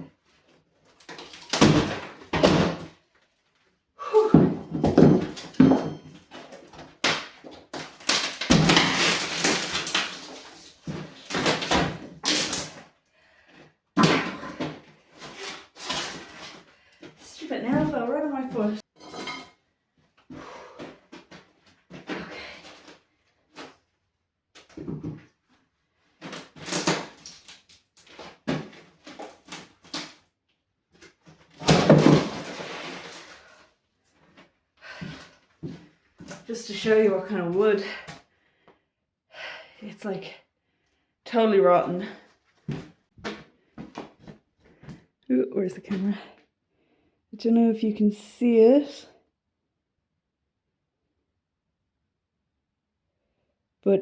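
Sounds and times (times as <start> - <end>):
boards crashing: 7.0 - 12.6, 31.6 - 33.3.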